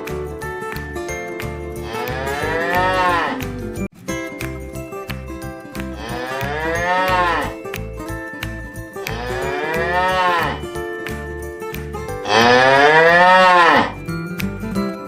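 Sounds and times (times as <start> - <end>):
cow mooing: 1.8 - 3.5, 6.0 - 7.6, 9.0 - 10.6, 12.2 - 14.0.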